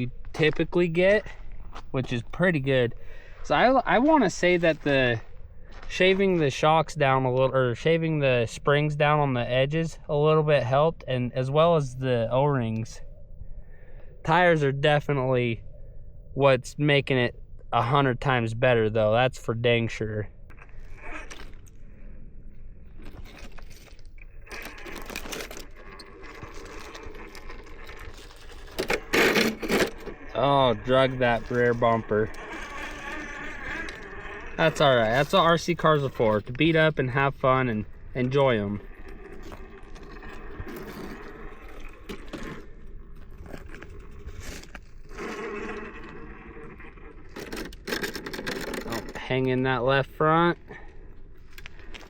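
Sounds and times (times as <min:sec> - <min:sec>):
tires scraping on rock: 0:00.0 - 0:13.0, 0:17.8 - 0:52.0
small electric motor whirring: 0:22.9 - 0:36.4, 0:37.9 - 0:49.2.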